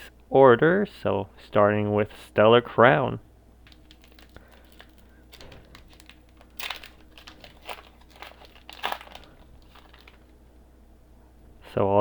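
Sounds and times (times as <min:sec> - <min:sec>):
foil wrapper tearing and crinkling: 0:03.6 - 0:10.4.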